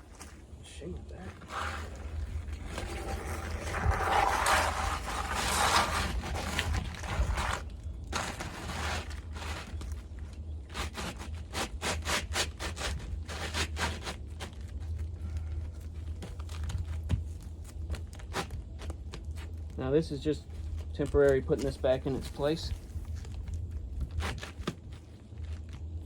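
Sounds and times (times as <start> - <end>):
shingle scraping on roof: 1.3 - 14.8.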